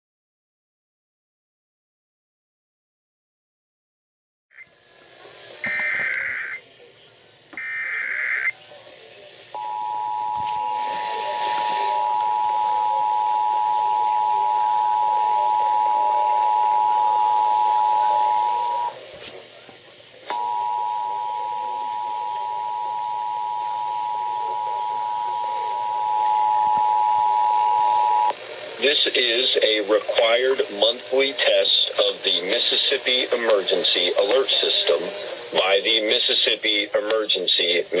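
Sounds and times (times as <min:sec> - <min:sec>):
screeching digital header bursts: 0:05.6 - 0:06.6
two-tone attention signal: 0:05.6 - 0:06.6, 0:09.6 - 0:19.0, 0:20.3 - 0:28.3
faint broadcast hiss: 0:28.3 - 0:38.0.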